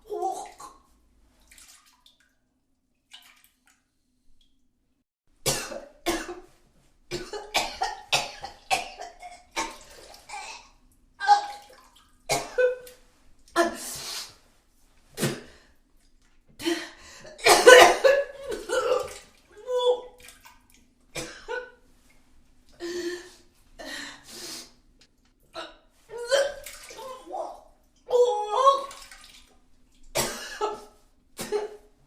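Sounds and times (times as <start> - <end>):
person retching and vomiting: 5.4 - 6.4, 7.1 - 10.8, 17.3 - 19.2.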